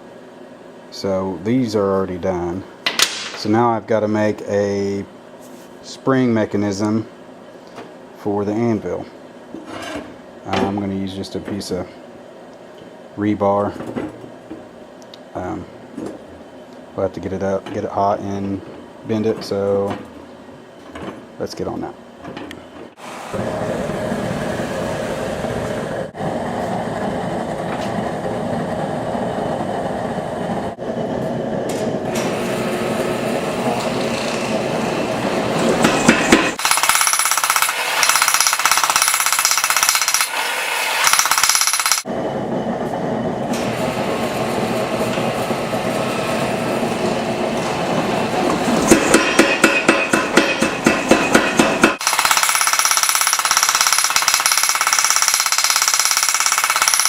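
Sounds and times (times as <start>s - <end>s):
forge roaring: 23.1s - 35.8s, 42.1s - 49.1s
hammer blows on hot steel: 48.8s - 52.1s.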